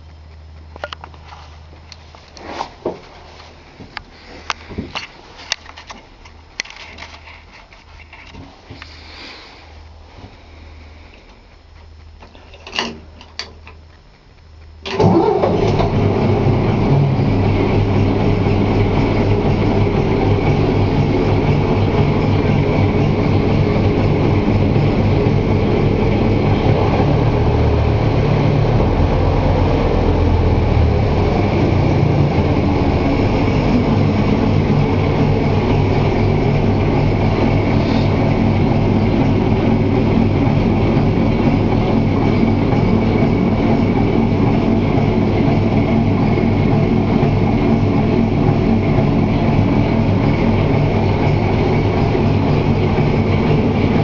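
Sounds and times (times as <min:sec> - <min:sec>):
diesel locomotive engine running: 0:14.5 - 0:54.0.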